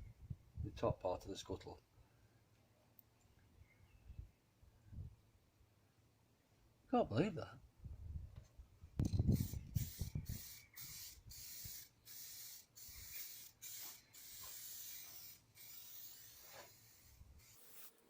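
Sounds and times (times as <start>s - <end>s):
aerosol spray can hissing: 9.3s - 18.0s.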